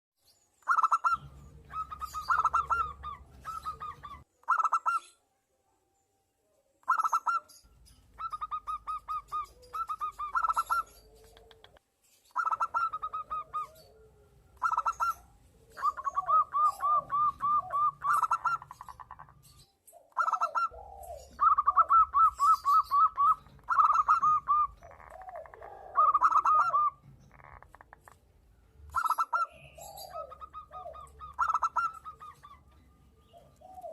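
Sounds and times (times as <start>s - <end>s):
doves cooing: 0.7s - 5.1s, 8.2s - 11.8s, 12.4s - 28.2s, 28.9s - 33.9s
low wavering bird call: 15.8s - 18.7s, 20.2s - 27.0s.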